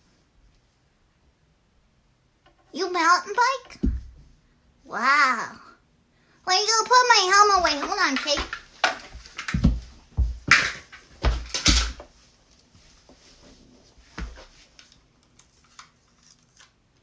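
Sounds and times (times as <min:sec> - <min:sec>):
objects knocking and rustling: 0:03.7 - 0:04.3, 0:07.4 - 0:12.2
deep thuds: 0:03.7 - 0:04.4, 0:07.6 - 0:12.0.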